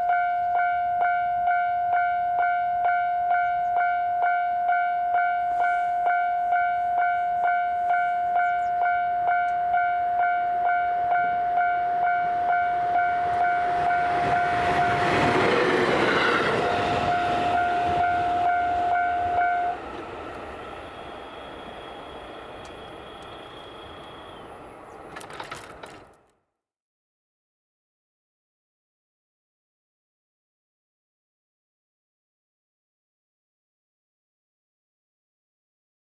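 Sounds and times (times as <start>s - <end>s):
level-crossing warning bell ringing: 0.0s - 24.4s
train passing: 0.4s - 26.1s.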